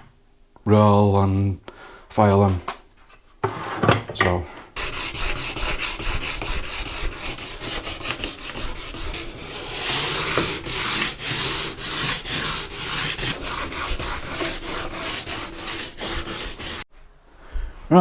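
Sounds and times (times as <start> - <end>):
sandpaper rubbing on wood: 2.2 - 2.8, 4.8 - 16.9.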